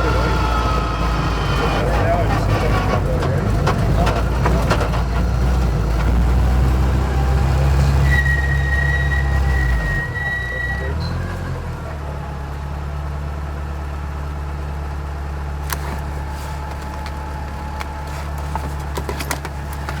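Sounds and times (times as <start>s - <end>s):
rally car engine: 0.0s - 12.8s.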